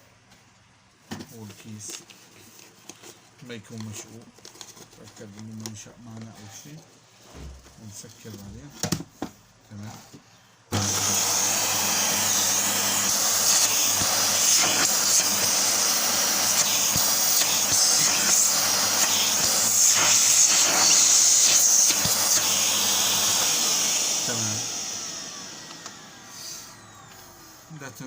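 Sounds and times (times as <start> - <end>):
vacuum cleaner running: 10.7 - 28.0.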